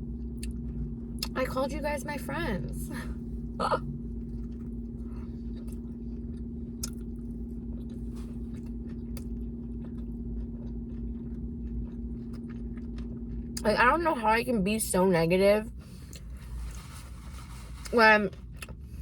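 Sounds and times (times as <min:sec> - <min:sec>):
steady low hum: 0:00.0 - 0:19.0
person chewing food: 0:00.2 - 0:01.4, 0:03.2 - 0:13.6, 0:15.7 - 0:19.0.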